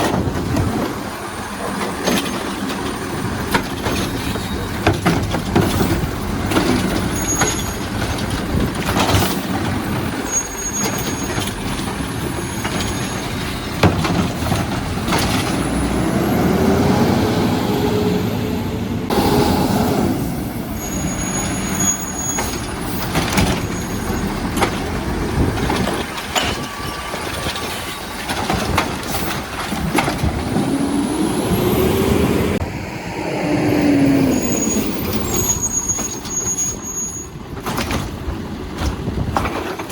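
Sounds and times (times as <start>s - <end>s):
carts knocking and banging: 0.0s - 16.7s, 20.7s - 32.6s, 34.6s - 39.9s
diesel engine revving: 11.6s - 27.4s, 28.0s - 36.8s.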